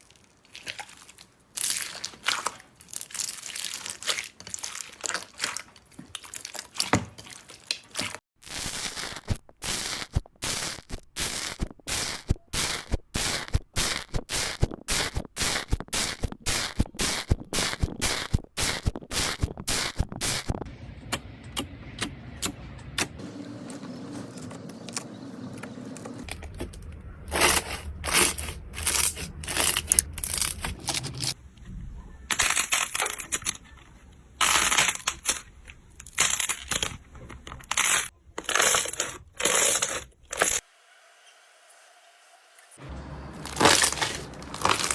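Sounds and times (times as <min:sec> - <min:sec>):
slime crackling and squishing: 0:00.0 - 0:20.7, 0:43.4 - 0:44.9.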